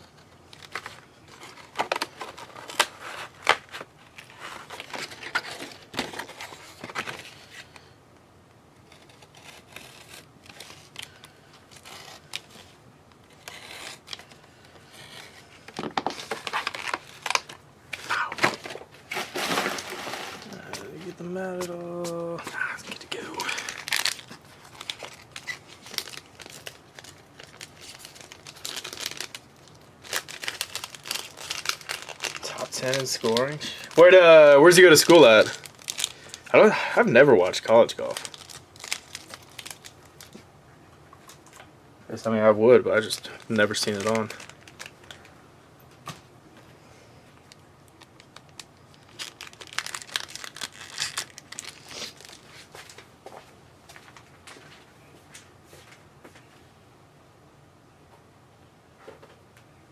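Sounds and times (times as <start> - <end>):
foil wrappers crinkling and tearing: 0.0 - 7.9, 8.8 - 40.4, 42.4 - 45.4, 47.4 - 53.1.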